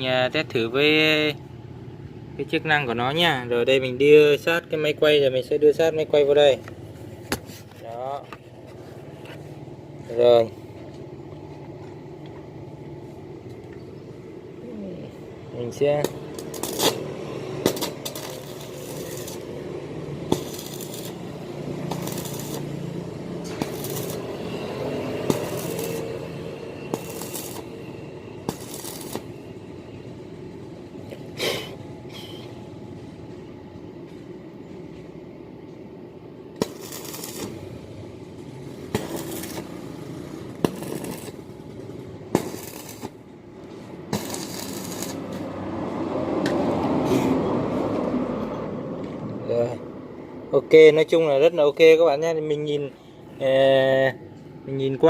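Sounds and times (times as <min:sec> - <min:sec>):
welding machine hum: 0:15.3 - 0:30.7, 0:36.6 - 0:45.8
welding arc crackling and popping: 0:15.9 - 0:29.5, 0:36.6 - 0:37.8, 0:38.6 - 0:45.5.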